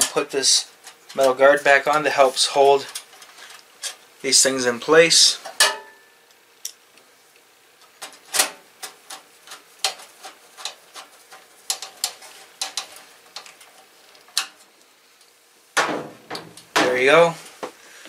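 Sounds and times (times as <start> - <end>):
metal parts clicking and tapping: 7.8 - 14.7.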